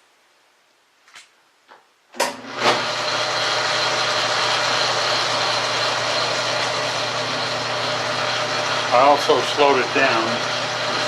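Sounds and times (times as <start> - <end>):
lathe motor humming: 2.3 - 11.0.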